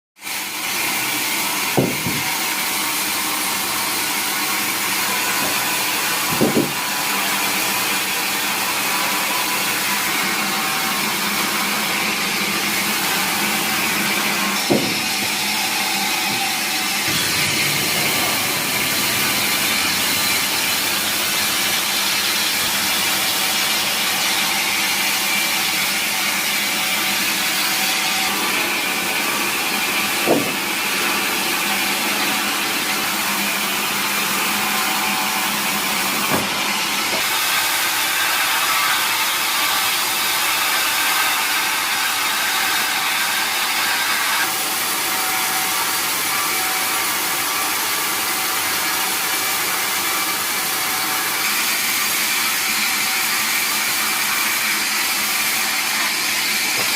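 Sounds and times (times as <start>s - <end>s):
band saw cutting timber: 0.2s - 56.9s
sharp knocks: 1.7s - 2.4s, 6.2s - 6.9s, 14.6s - 15.4s, 30.2s - 30.7s, 36.2s - 37.3s, 56.7s - 56.9s.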